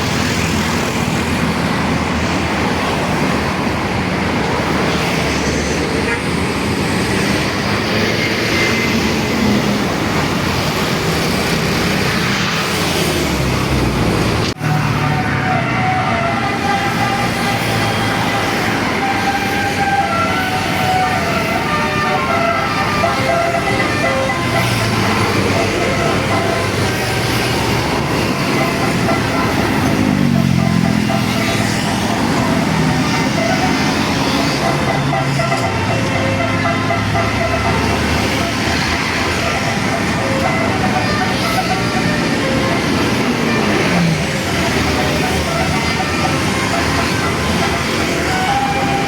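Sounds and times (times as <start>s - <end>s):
bus diesel engine drone: 0.0s - 49.0s
roadside traffic passing: 0.0s - 49.0s
steady pitched tone: 13.5s - 49.0s.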